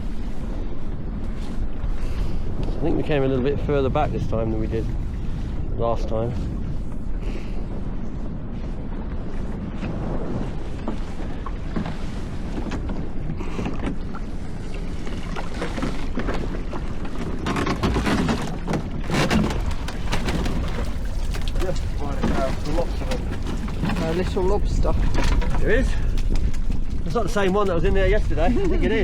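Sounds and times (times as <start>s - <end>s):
boat engine rumble: 0.0s - 29.0s
wind on microphone: 0.0s - 29.0s
knocks and rattles of lobster pot: 15.5s - 28.9s.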